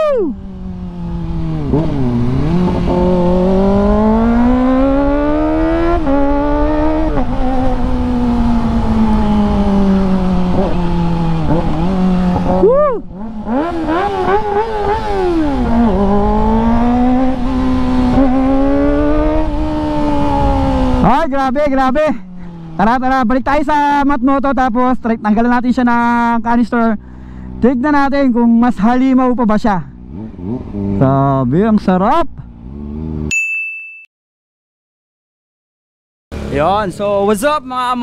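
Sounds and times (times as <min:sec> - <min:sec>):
motorcycle engine revving: 0:00.0 - 0:21.3, 0:22.1 - 0:23.2, 0:27.4 - 0:33.3, 0:36.3 - 0:38.0.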